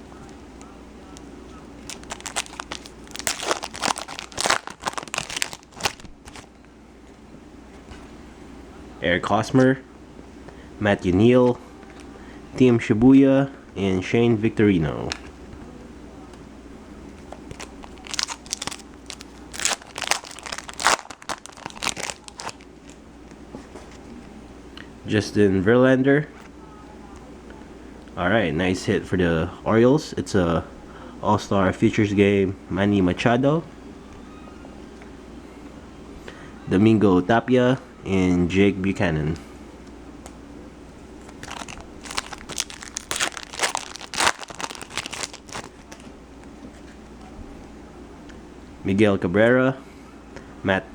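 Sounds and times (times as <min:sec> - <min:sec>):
foil wrapper tearing and crinkling: 0:01.8 - 0:06.5, 0:17.5 - 0:23.0, 0:41.3 - 0:46.0.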